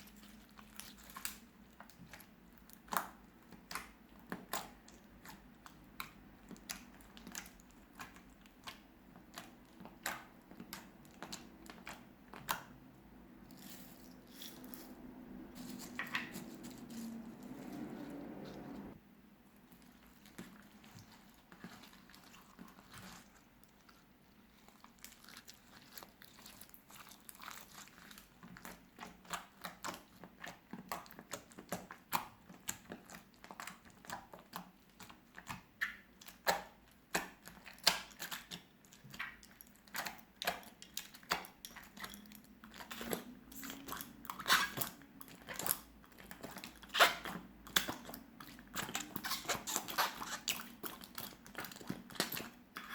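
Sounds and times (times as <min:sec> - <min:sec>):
slime with rice crunching by hand: 0:19.8 - 0:52.9.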